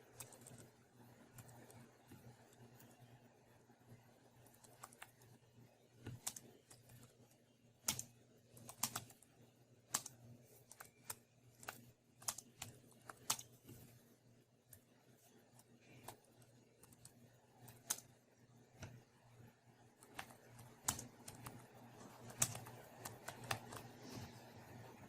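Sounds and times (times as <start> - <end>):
faint low hum: 0.0 - 25.0
keyboard keys clicking: 6.1 - 7.1, 7.8 - 9.2, 9.9 - 13.5, 16.0 - 18.1, 20.0 - 24.0.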